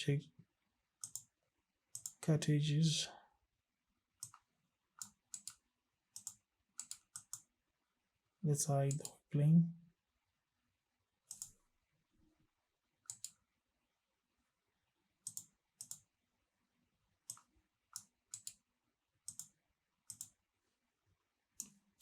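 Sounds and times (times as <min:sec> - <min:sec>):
computer mouse clicking: 0:01.0 - 0:01.3, 0:01.9 - 0:02.2, 0:04.2 - 0:07.5, 0:08.9 - 0:09.2, 0:11.3 - 0:11.6, 0:13.0 - 0:13.4, 0:15.2 - 0:16.1, 0:17.2 - 0:18.6, 0:19.2 - 0:20.4, 0:21.6 - 0:22.0.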